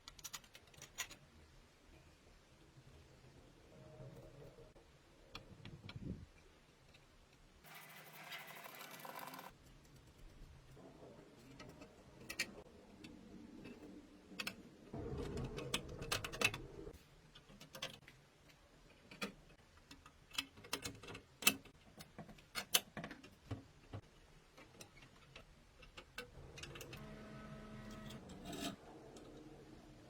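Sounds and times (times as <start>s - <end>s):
small hard parts clicking: 0.0s - 1.3s.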